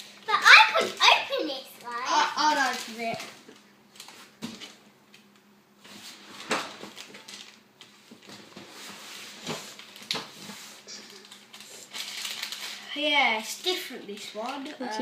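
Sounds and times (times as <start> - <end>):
plastic packet crinkling: 2.3 - 4.2, 6.8 - 8.4, 10.9 - 14.7.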